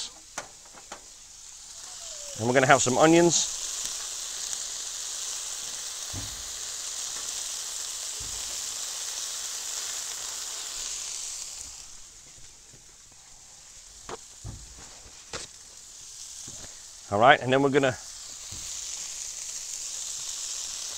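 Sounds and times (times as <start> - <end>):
food sizzling on griddle: 0.0 - 20.9
soft thuds: 6.1 - 6.5, 8.2 - 8.6, 14.0 - 15.6.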